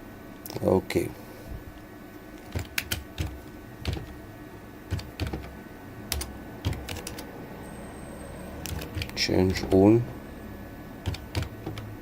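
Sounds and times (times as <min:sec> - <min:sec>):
keyboard keystrokes: 0:02.4 - 0:04.2, 0:04.9 - 0:07.3, 0:08.6 - 0:09.8, 0:11.0 - 0:11.9.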